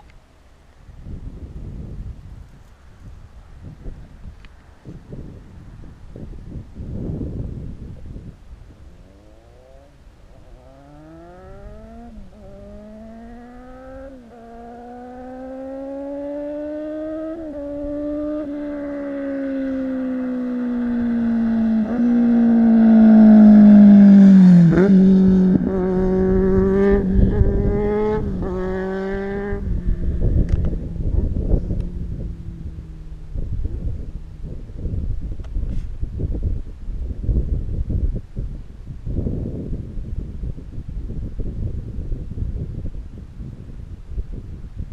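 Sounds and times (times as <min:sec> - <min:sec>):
wind noise: 0:00.0 - 0:44.9
motorcycle engine accelerating: 0:06.9 - 0:38.1.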